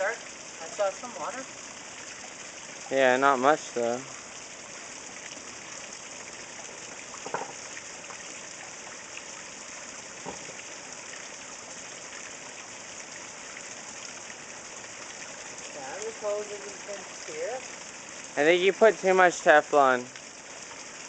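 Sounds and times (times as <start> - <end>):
water splashing over rocks: 0.0 - 21.0
faint knocks: 7.2 - 7.6, 10.2 - 10.6.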